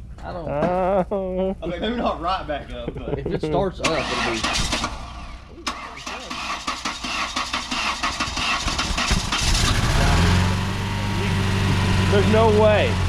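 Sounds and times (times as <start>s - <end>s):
car engine cranking and starting: 3.8s - 13.0s.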